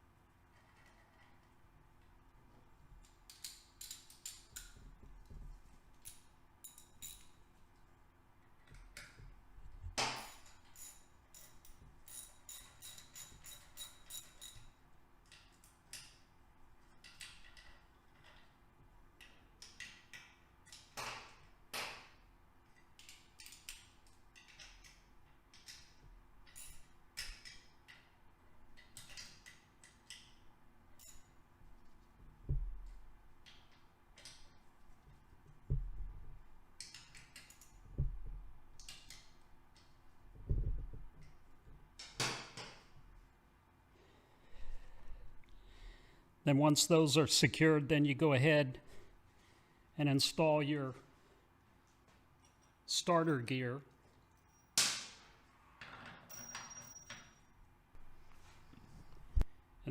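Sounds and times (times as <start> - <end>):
metallic clicks of tools: 3.0 - 4.8, 6.0 - 7.4, 10.1 - 16.3, 17.0 - 18.6, 22.7 - 30.4, 36.8 - 37.8
dull thumps: 35.6 - 36.4, 37.9 - 38.6.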